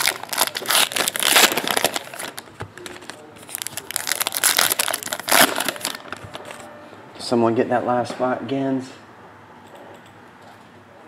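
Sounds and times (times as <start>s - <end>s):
wrappers crinkling and rustling: 0.0s - 6.6s.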